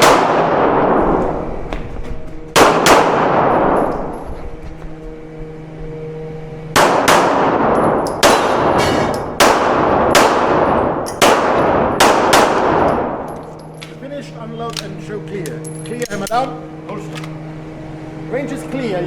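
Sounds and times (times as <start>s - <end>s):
handgun shots echoing: 2.6s - 4.0s, 6.8s - 14.0s.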